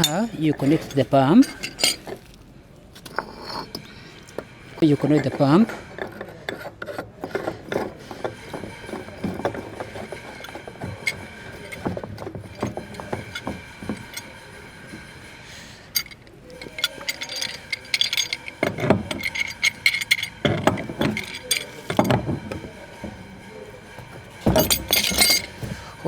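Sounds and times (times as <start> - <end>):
metal pipe fittings clinking: 0.0 - 2.4, 7.4 - 15.2, 15.8 - 23.4, 24.0 - 26.0.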